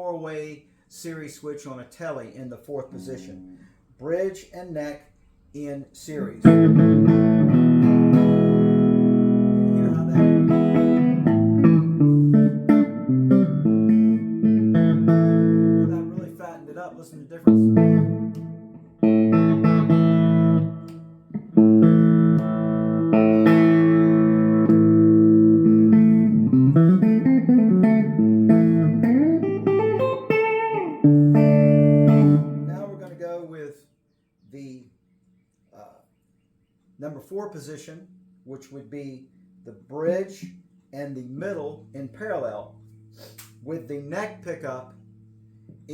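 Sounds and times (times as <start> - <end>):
electric guitar playing: 2.9 - 3.7, 6.4 - 33.5.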